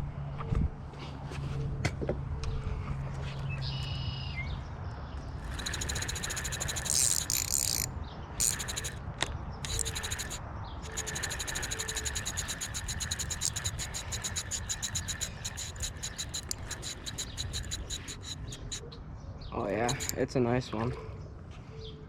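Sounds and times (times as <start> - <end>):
buzzing pulsed trill: 5.4 - 9.0, 9.6 - 18.8, 19.8 - 20.2.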